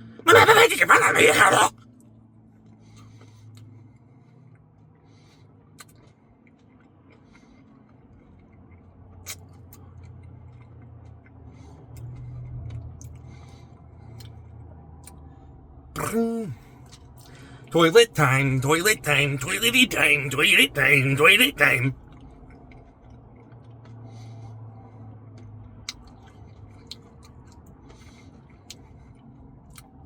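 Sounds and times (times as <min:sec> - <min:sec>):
chewing and mouth sounds: 0:05.3 - 0:14.4, 0:25.4 - 0:30.0.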